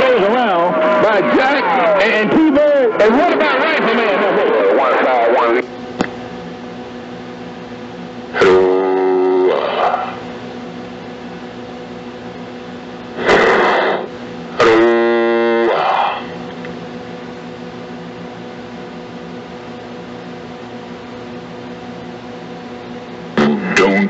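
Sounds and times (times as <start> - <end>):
pitched radio tone: 0.0 - 5.7, 8.3 - 10.3, 13.2 - 16.4, 23.4 - 24.0
faint heterodyne whines: 0.0 - 20.4
radio receiver hiss: 8.3 - 10.4, 13.1 - 16.6, 23.1 - 24.0.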